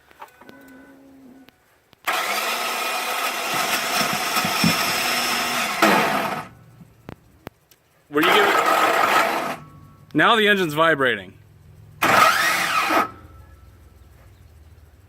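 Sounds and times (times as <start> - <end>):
car starter grinding: 2.0 - 7.2, 8.2 - 10.4, 11.6 - 14.2.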